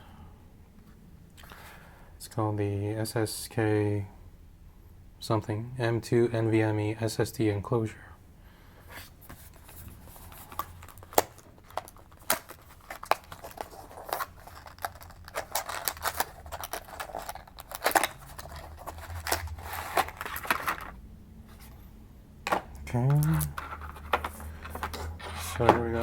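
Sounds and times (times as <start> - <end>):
packaging rustling: 9.3 - 21.8, 22.5 - 26.0.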